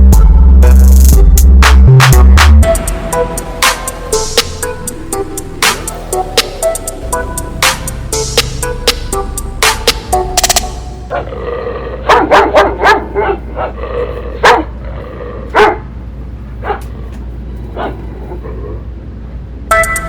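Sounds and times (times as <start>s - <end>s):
dog barking: 12.0s - 13.8s, 14.4s - 14.8s, 15.5s - 15.9s, 16.6s - 16.9s, 17.8s - 18.0s.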